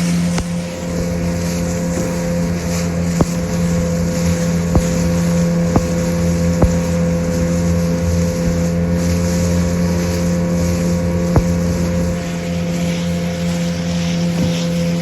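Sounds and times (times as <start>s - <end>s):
motorboat engine running: 0.0s - 15.0s
wind and water noise: 0.0s - 15.0s
short sharp knocks: 0.4s - 0.8s, 3.1s - 3.8s, 4.7s - 7.2s, 11.4s - 12.2s.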